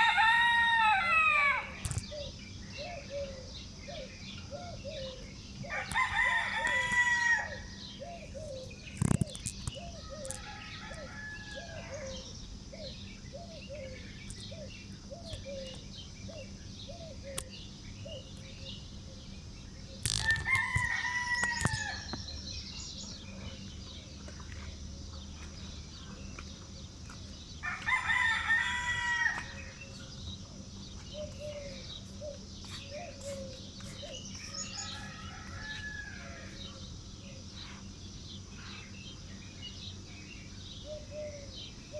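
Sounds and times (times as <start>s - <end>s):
rooster crowing: 0.0s - 1.9s, 5.7s - 7.8s, 10.0s - 12.2s, 20.1s - 22.2s, 27.6s - 29.8s, 34.5s - 36.6s
birds chirping: 0.0s - 41.9s.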